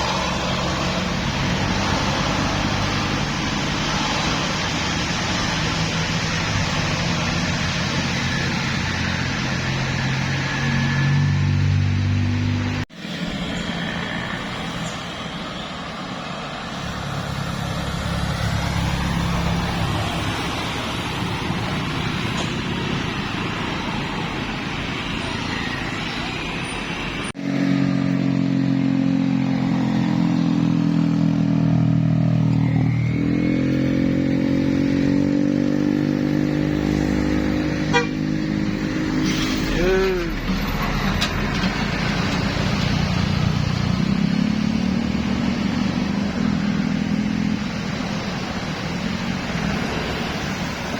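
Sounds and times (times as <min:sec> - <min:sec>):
bus diesel engines running: 0:00.0 - 0:50.9
traffic noise: 0:00.0 - 0:50.9
multi-note bus horn chord: 0:37.8 - 0:38.3.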